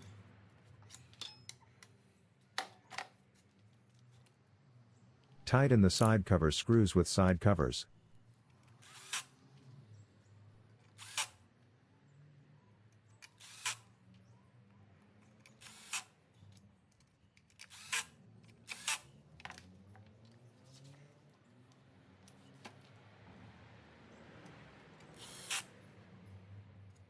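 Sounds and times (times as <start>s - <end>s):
cordless electric screwdriver: 8.8s - 9.3s, 11.0s - 11.3s, 13.4s - 13.8s, 17.6s - 18.1s, 25.1s - 25.7s.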